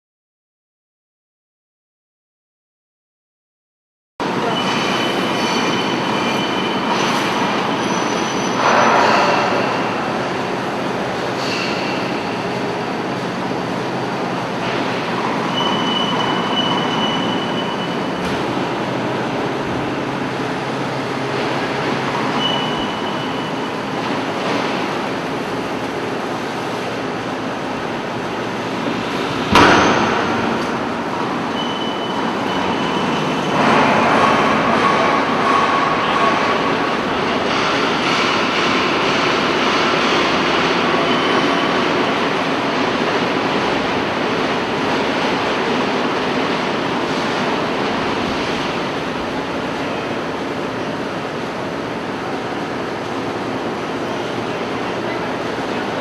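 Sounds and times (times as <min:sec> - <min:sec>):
high machine squeal: 0:04.4 - 0:10.0, 0:15.2 - 0:18.3, 0:22.1 - 0:24.0, 0:31.1 - 0:36.8
sharp bang: 0:29.5 - 0:30.8.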